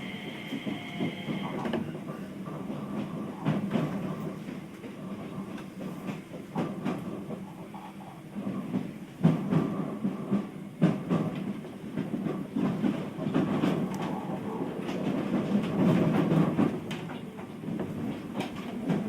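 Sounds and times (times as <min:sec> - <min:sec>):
train wheels rumbling on rail: 0:00.0 - 0:19.0
clicks of bogies crossing rail joints: 0:08.6 - 0:19.0.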